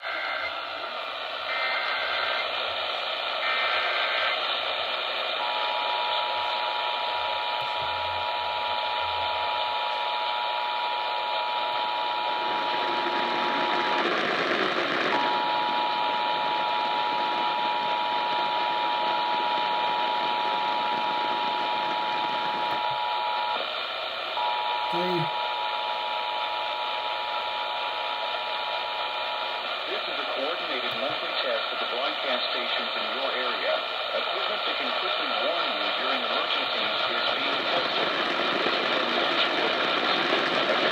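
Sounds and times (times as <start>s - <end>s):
radio static hiss: 0.0s - 25.4s, 26.3s - 40.9s.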